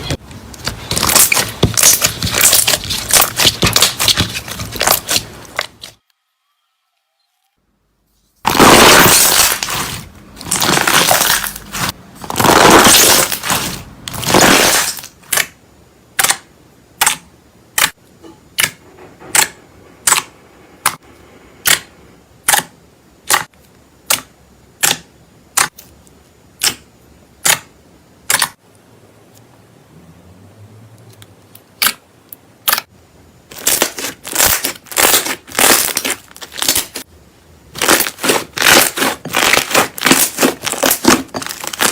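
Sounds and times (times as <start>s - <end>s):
slime crackling and popping: 0.0s - 6.0s, 8.5s - 15.6s, 33.5s - 37.0s, 37.7s - 41.9s.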